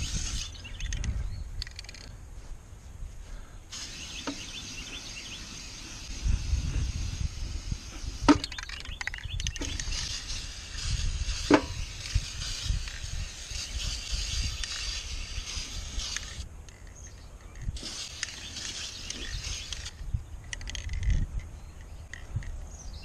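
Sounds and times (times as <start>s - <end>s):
aerosol spray can hissing: 0.0s - 0.6s, 3.7s - 16.5s, 17.8s - 19.9s
sharp clicks: 0.8s - 2.1s.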